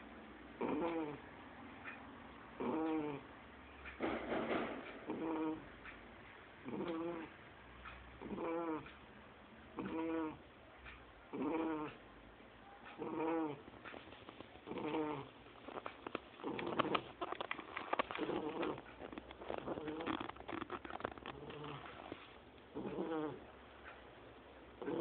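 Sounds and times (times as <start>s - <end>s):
puppy snoring: 0.6s - 1.2s, 2.6s - 3.3s, 4.5s - 5.7s, 6.6s - 7.4s, 8.2s - 8.9s, 9.8s - 10.4s, 11.3s - 12.0s, 13.0s - 13.7s, 14.6s - 23.5s, 24.8s - 25.0s
irregular clicking sounds: 1.8s - 9.1s, 9.8s - 12.1s, 12.8s - 25.0s.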